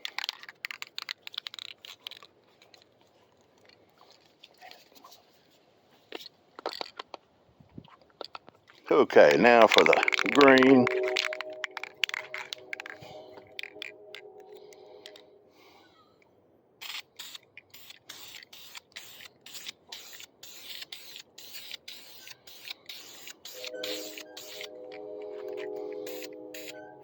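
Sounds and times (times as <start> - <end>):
spray can ball rattling: 0.0 - 2.3, 9.2 - 13.9, 16.8 - 24.7, 25.5 - 26.8
faint background music: 9.4 - 15.5.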